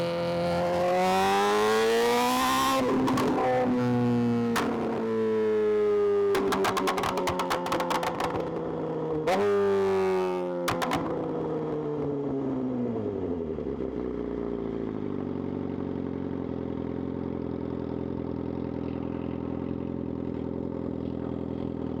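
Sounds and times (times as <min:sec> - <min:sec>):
motorcycle engine idling: 0:14.4 - 0:22.0.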